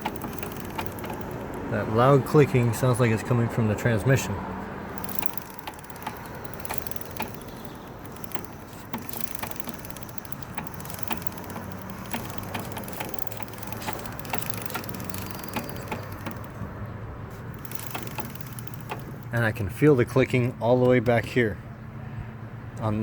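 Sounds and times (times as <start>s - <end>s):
loud repeating clicking: 0.0s - 1.7s, 4.8s - 19.6s
motorcycle engine hum: 0.0s - 23.0s.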